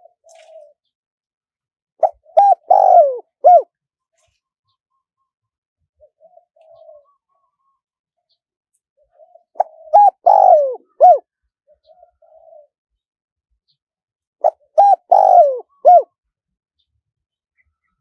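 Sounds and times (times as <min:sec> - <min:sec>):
dove cooing: 0:00.0 - 0:00.8, 0:02.0 - 0:03.7, 0:06.0 - 0:07.7, 0:09.0 - 0:12.8, 0:14.4 - 0:16.1.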